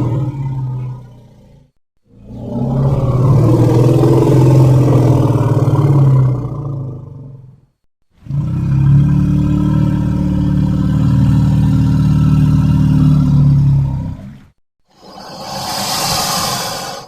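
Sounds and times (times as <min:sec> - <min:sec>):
monster growling: 0:00.0 - 0:07.0, 0:15.0 - 0:17.0.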